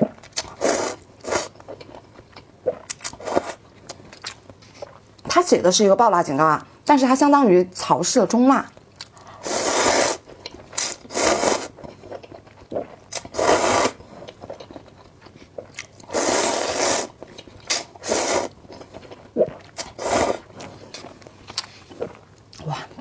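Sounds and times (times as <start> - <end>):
person slurping noodles: 0.4 - 1.5, 2.7 - 3.6, 9.4 - 11.8, 12.8 - 14.0, 16.1 - 18.6, 19.4 - 20.6
chewing: 14.0 - 16.2, 17.2 - 23.0.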